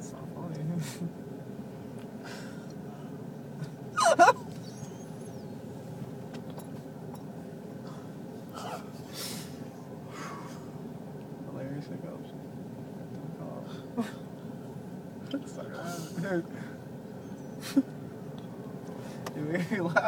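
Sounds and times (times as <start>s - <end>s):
man hiccuping: 4.0s - 4.5s.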